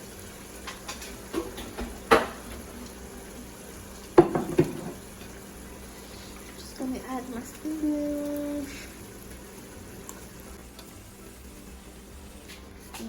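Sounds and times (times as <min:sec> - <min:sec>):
sauce sizzling: 0:00.0 - 0:13.0
pot and utensil clatter: 0:00.6 - 0:02.8, 0:04.2 - 0:05.4.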